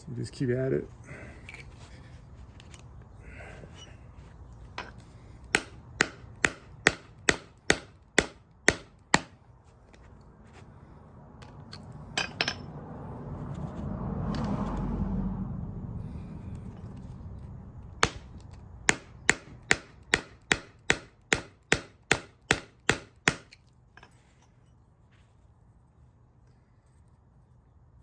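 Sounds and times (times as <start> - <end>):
rustling noise: 1.6 - 3.1, 24.2 - 27.7
hammer striking metal: 4.8 - 9.4, 18.0 - 18.3, 18.9 - 23.5.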